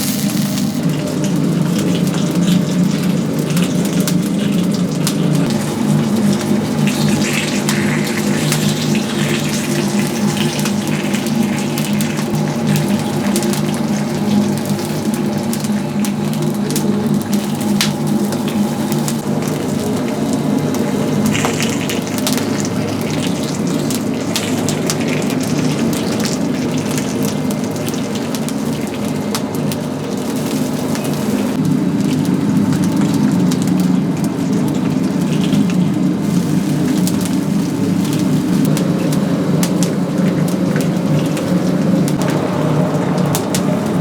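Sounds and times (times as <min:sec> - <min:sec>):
chickens sizzling: 0:00.0 - 0:44.0
wood fire crackling: 0:00.0 - 0:44.0.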